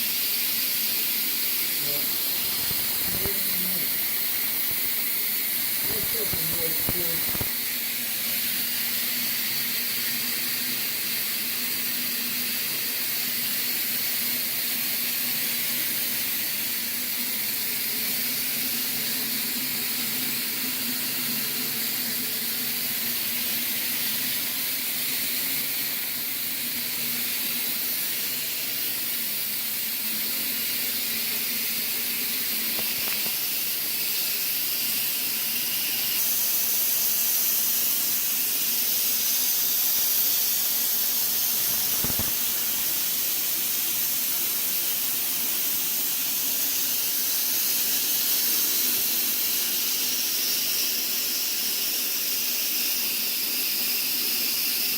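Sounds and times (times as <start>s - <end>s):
fog machine hissing: 0.0s - 54.9s
faint motor hum: 1.7s - 7.6s.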